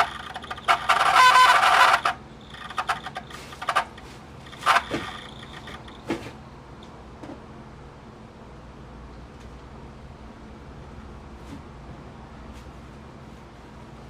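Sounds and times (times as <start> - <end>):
cassette deck running: 0.0 - 7.0.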